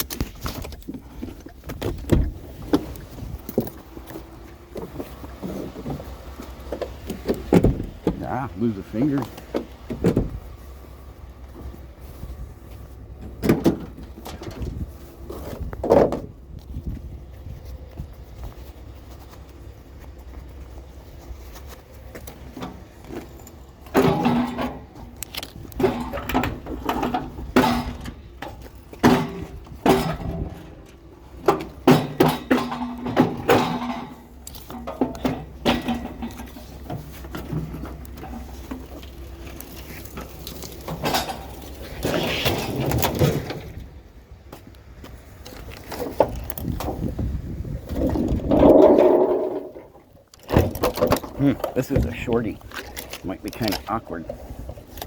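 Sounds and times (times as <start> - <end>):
metal scrap clanking and rattling: 12.8 - 16.4, 22.1 - 44.0, 45.4 - 55.0.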